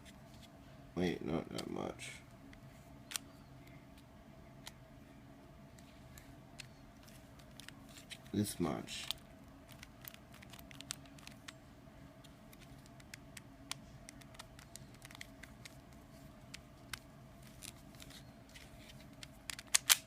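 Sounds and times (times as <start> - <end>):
puzzle cube clicking and scraping: 9.0 - 11.6, 12.5 - 20.0.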